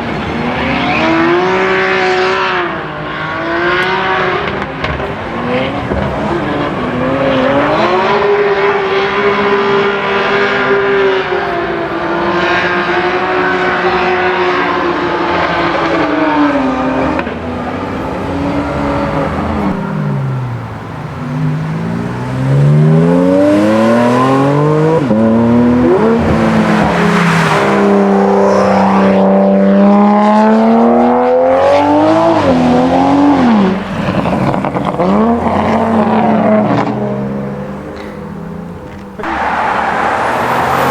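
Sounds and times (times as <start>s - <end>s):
car engine revving: 0.0s - 40.9s.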